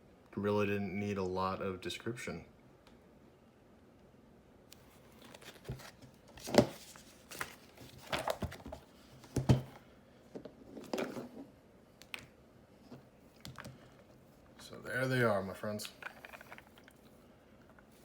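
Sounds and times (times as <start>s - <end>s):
paper rustling: 4.8s - 9.6s.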